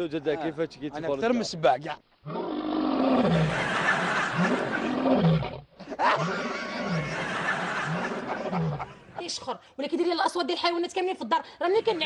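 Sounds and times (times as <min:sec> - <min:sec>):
lion roaring: 0:02.2 - 0:03.6.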